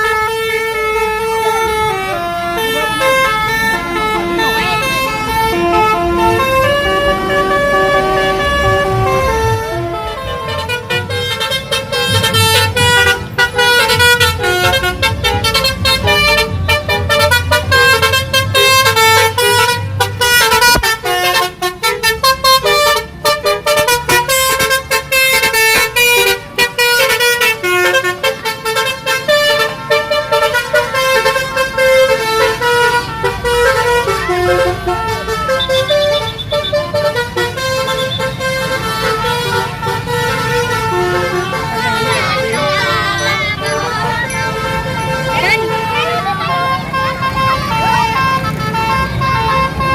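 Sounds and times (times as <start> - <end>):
low engine rumble: 0.0 - 49.9
multi-tone air horns playing tunes: 0.0 - 49.9.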